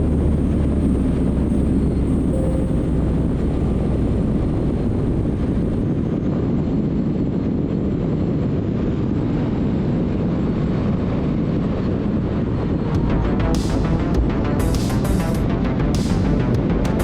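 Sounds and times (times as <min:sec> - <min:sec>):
road noise: 0:00.0 - 0:06.2.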